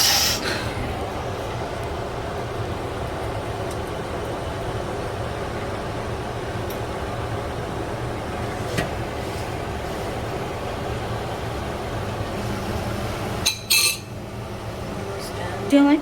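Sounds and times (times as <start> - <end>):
machine hum: 0.0 - 16.0
bright clink: 13.5 - 14.1.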